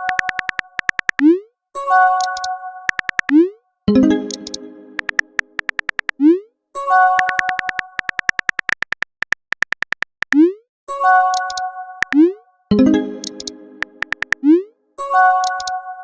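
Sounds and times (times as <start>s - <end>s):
fast ticking clicks: 0.0s - 1.3s, 2.2s - 3.4s, 4.3s - 6.2s, 7.2s - 10.5s, 11.4s - 12.2s, 13.2s - 14.4s
held synthesized tones: 2.3s - 6.4s.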